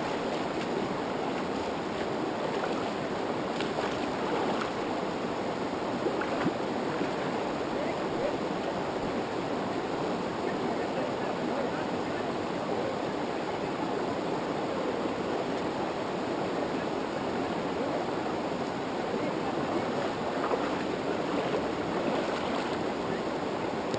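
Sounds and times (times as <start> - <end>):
river water rushing over rocks: 0.0 - 23.9.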